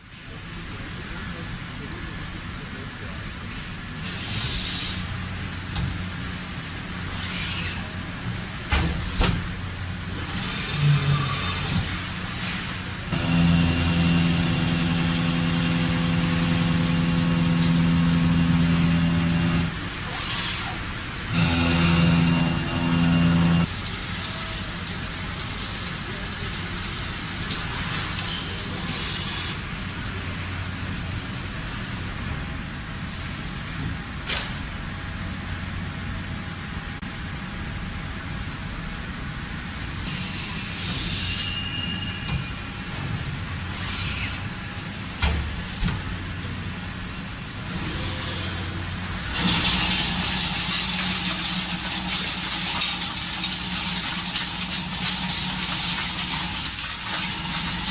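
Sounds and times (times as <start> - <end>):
machinery humming: 10.7 - 24.0.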